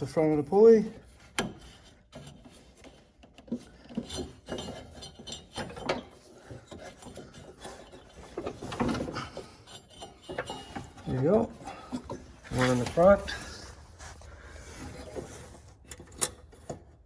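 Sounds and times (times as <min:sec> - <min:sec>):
light metal clinks and knocks: 0:01.4 - 0:13.4
hands rubbing and scraping belt: 0:12.2 - 0:15.8.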